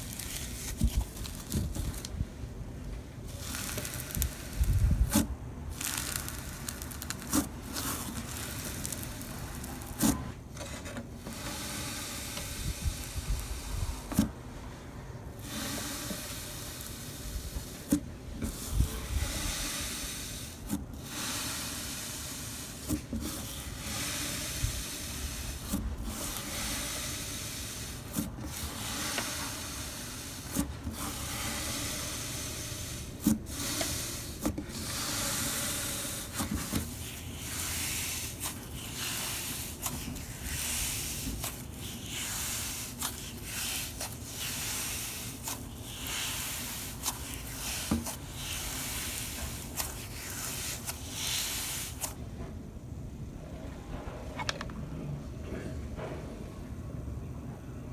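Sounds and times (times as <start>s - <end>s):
slime crackling hiss: 0.0s - 2.2s, 3.3s - 10.2s, 15.4s - 52.2s.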